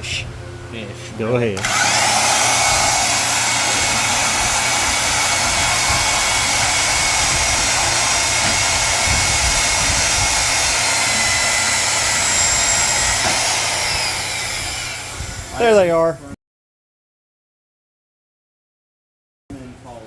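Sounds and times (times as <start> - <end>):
power tool cutting steel: 1.6 - 15.7.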